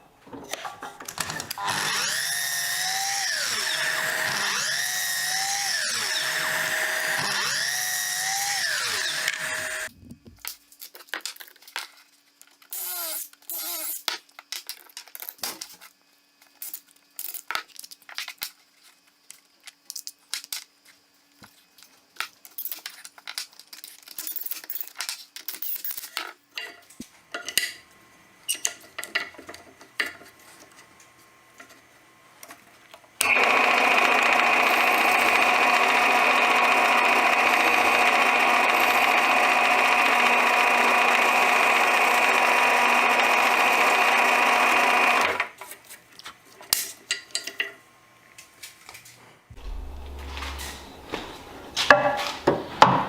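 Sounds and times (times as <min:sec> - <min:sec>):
electric power tool running: 0:01.2 - 0:10.0, 0:33.2 - 0:45.5, 0:49.6 - 0:51.9.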